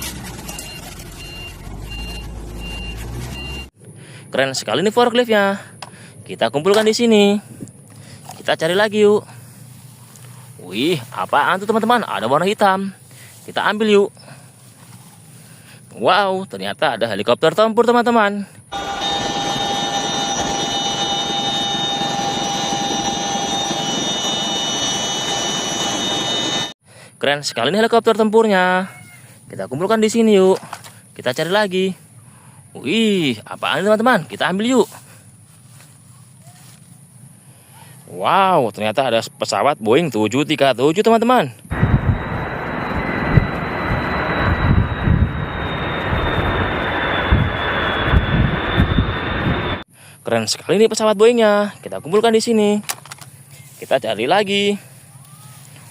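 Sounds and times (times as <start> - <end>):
jet engines whining and rumbling: 0.0 - 16.7, 18.5 - 26.8, 41.2 - 50.6, 51.7 - 55.9
helicopter turbine engine: 18.7 - 26.8, 41.7 - 49.9.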